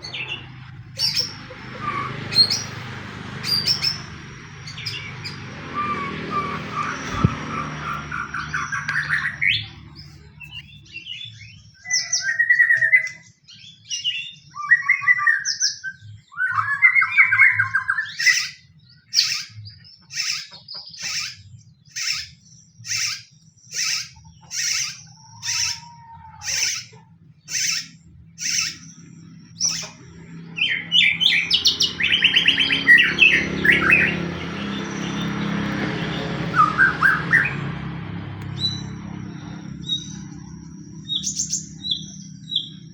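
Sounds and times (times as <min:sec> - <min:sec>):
sharp loud bird notes: 0:00.0 - 0:42.9
songbird singing: 0:00.0 - 0:42.9.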